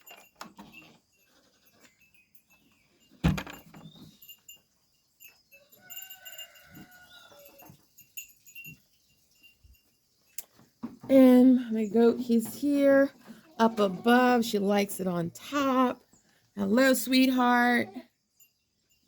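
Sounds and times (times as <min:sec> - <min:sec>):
livestock bleating: 0:13.3 - 0:14.4.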